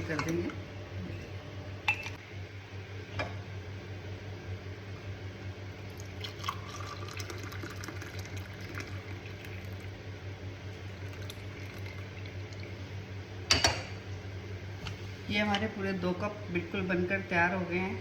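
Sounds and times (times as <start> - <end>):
tea pouring into cups: 5.8 - 10.0, 10.7 - 12.8.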